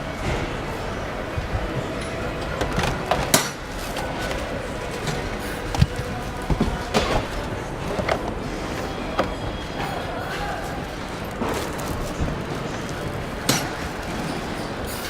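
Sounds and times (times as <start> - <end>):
factory machinery hum: 0.0 - 15.0.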